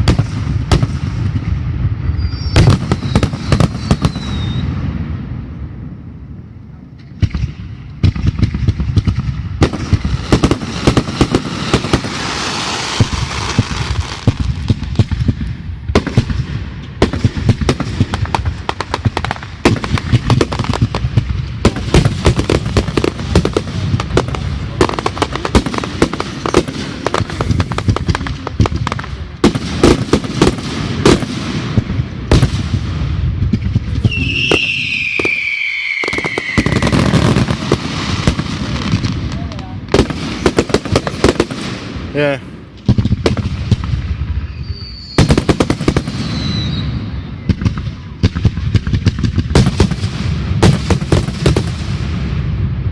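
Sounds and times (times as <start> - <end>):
fireworks banging and crackling: 0.0 - 52.9
firework whistle gliding down: 2.0 - 4.8, 33.9 - 39.7, 44.4 - 48.2.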